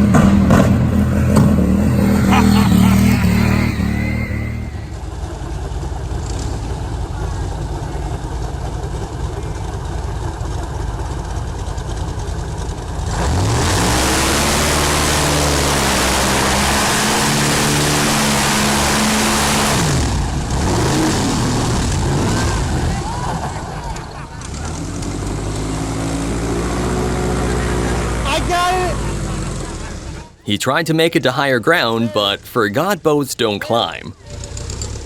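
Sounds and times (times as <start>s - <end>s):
motorboat engine revving: 13.0s - 22.9s, 24.5s - 30.2s.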